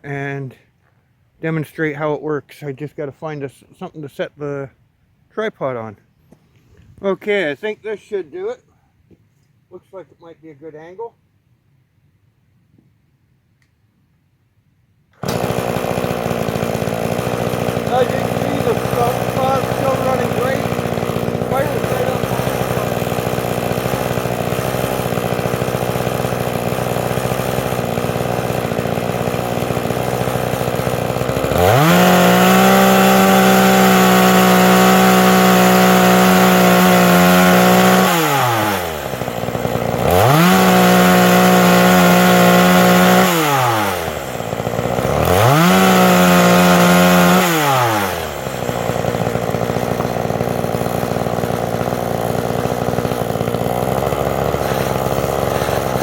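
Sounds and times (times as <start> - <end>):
chainsaw idling and revving: 15.2 - 56.0.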